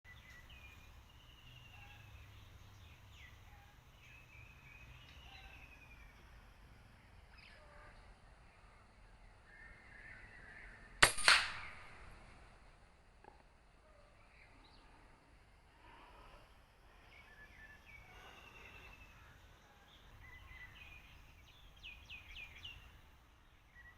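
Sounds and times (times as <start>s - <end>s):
small birds chirping: 0.1s - 11.8s, 13.2s - 23.9s
longer crack: 11.0s - 12.4s
air rifle shot: 11.0s - 12.5s.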